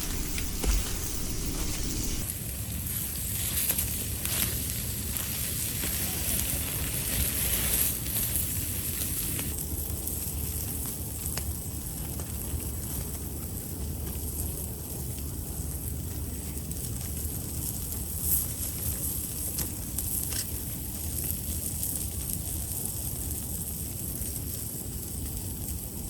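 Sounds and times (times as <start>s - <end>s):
campfire crackling: 0.0s - 2.3s
sharp pops: 0.0s - 2.3s
steady high hiss: 0.0s - 2.3s
steady low rumble: 0.0s - 2.3s.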